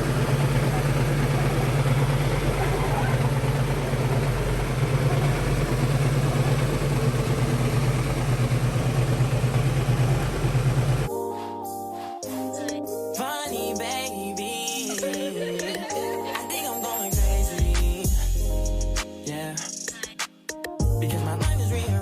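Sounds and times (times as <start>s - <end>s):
car engine idling: 0.0s - 11.1s
music: 11.1s - 22.0s.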